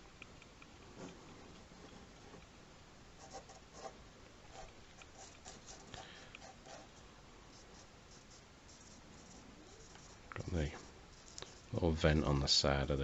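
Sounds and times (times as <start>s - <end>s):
drawing strokes on paper: 3.2s - 12.0s.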